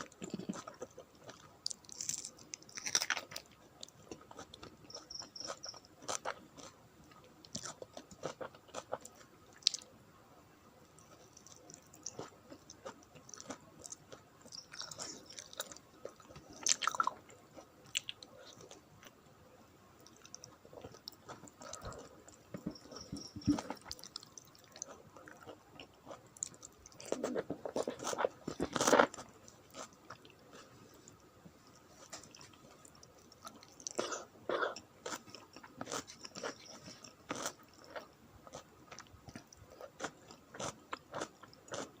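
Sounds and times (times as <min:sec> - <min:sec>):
crunchy bites: 0:00.2 - 0:03.5.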